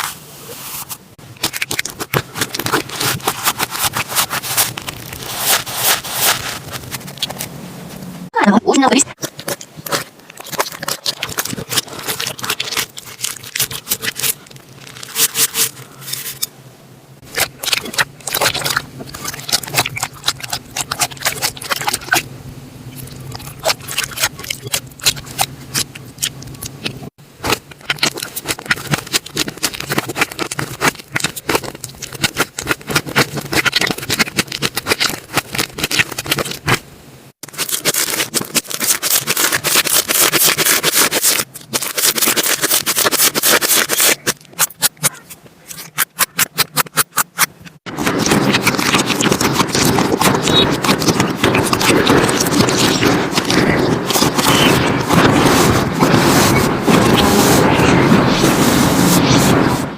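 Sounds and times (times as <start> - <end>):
slime squished by hand: 17.3 - 22.3, 37.5 - 58.6.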